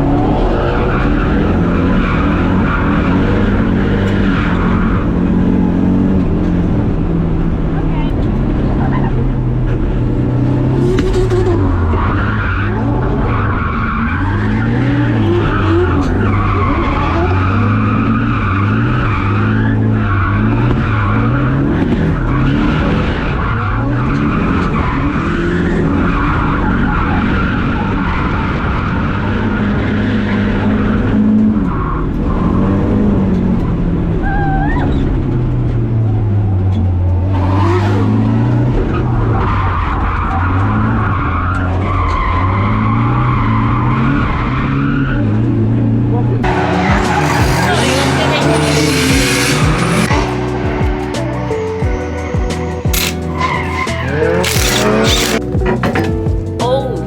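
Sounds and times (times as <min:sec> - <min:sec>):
car engine revving: 0:00.0 - 0:56.6
tyres squealing: 0:46.4 - 0:50.2, 0:52.9 - 0:56.2.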